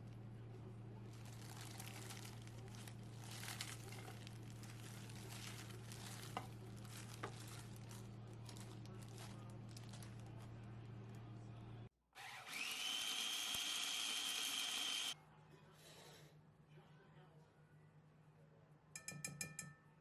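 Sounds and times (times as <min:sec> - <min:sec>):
dry rustling and crinkling: 0:00.0 - 0:11.4
steady low hum: 0:00.0 - 0:11.9.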